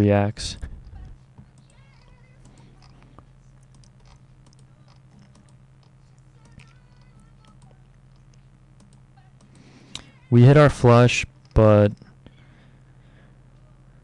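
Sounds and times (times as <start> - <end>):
steady low hum: 0.0 - 14.0
computer clicking: 1.4 - 10.1.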